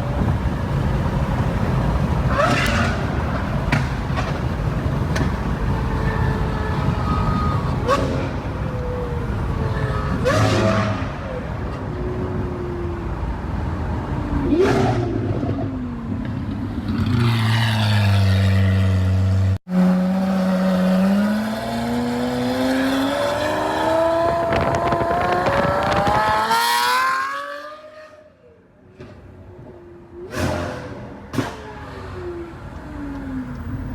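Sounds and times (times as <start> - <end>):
sports car engine revving: 19.3 - 27.9.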